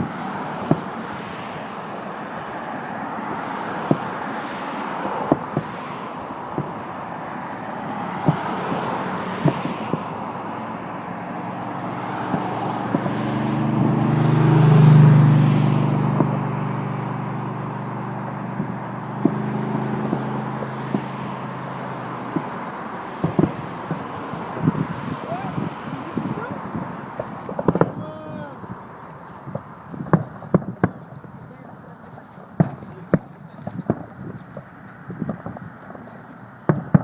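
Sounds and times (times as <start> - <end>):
traffic noise: 0.0 - 37.0
vehicle engine passing: 0.0 - 37.0
sharp pops: 8.1 - 10.1, 16.1 - 16.4, 18.6 - 21.3, 22.2 - 31.3, 32.0 - 37.0.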